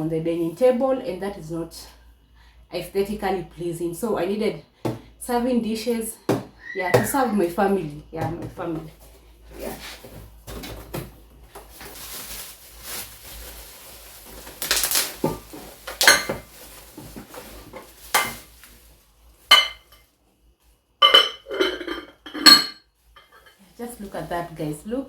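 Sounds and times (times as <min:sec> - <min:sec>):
soft rustling: 0:11.6 - 0:19.5
dishes knocking and clinking: 0:19.5 - 0:20.0, 0:21.0 - 0:23.4
dishes ringing clinks: 0:21.0 - 0:22.8.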